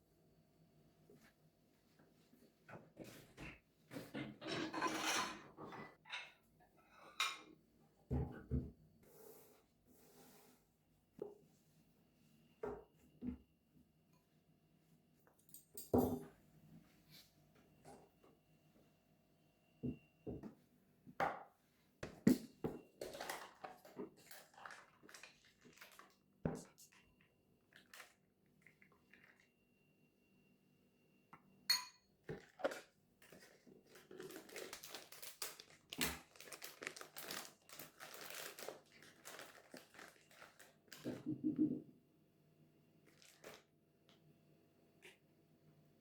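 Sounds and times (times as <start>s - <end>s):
clink: 31.7s - 32.1s
crinkling and rustling: 32.4s - 41.3s, 43.0s - 43.7s.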